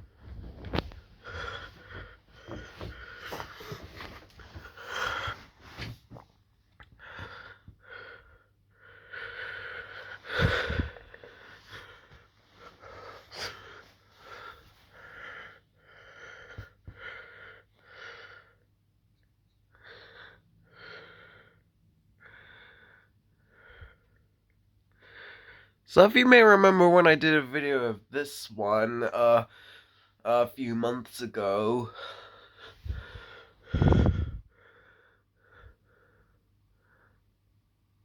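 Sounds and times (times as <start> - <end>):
person breathing heavily: 0.6 - 6.0, 7.0 - 18.6, 19.8 - 21.6, 29.5 - 30.2, 31.9 - 37.2.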